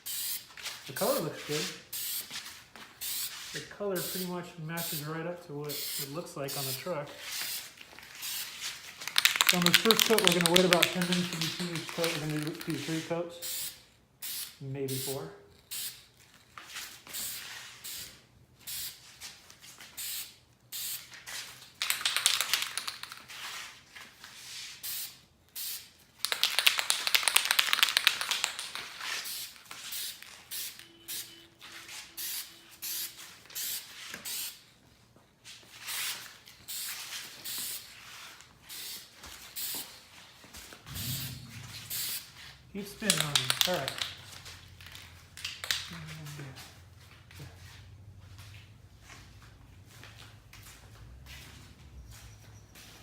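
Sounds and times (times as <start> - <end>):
spray paint can hissing: 0.0 - 2.4, 3.0 - 5.1, 5.7 - 16.1, 17.1 - 19.0, 20.0 - 21.1, 21.8 - 23.2, 24.8 - 31.3, 32.2 - 34.6, 35.9 - 38.0, 38.7 - 40.0, 40.9 - 45.9.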